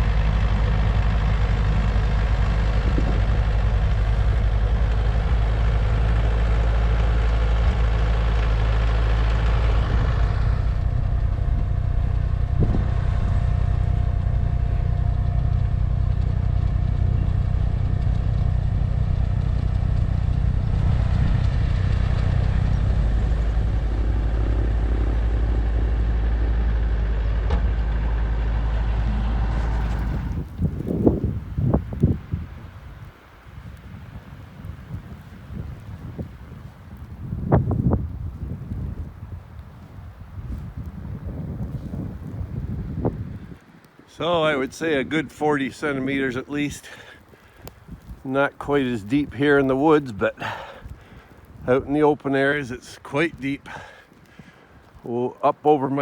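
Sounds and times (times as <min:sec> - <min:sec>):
higher noise over engine: 0:00.0 - 0:43.2
engine droning: 0:00.0 - 0:56.0.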